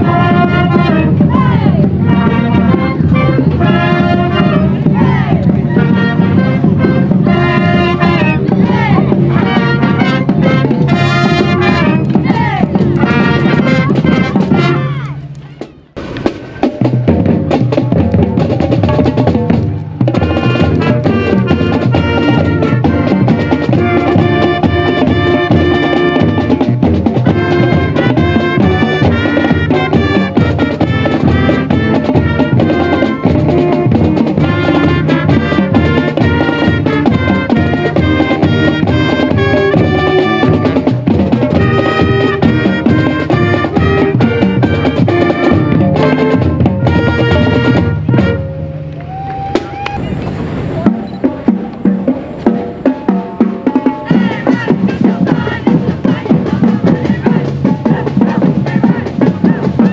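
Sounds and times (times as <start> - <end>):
sustained horn notes: 0.0 - 16.7, 20.1 - 49.2
steady drum beat: 0.0 - 59.9.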